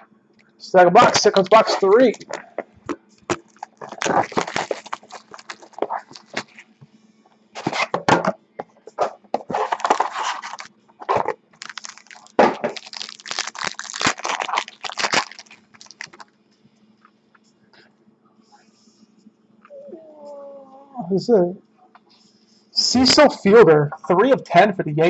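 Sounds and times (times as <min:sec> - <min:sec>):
plastic wrap crinkling and tearing: 0:03.2 - 0:06.6, 0:09.5 - 0:16.3.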